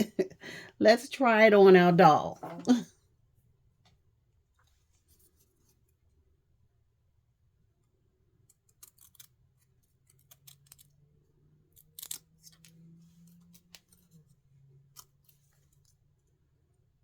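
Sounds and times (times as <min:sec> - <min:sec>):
small craft pieces clicking: 0:08.5 - 0:09.4, 0:10.0 - 0:11.0, 0:11.7 - 0:12.8.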